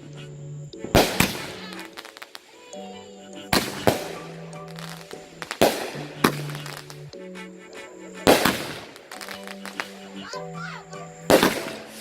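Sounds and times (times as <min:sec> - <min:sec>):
background music: 0:00.0 - 0:12.0
fireworks bangs: 0:00.9 - 0:02.6, 0:03.6 - 0:07.0, 0:08.3 - 0:10.0, 0:11.3 - 0:12.0.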